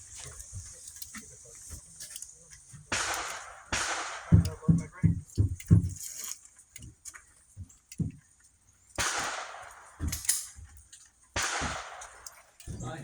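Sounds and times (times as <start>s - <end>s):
pistol shots: 2.9s - 4.7s, 9.0s - 10.5s, 11.4s - 12.9s.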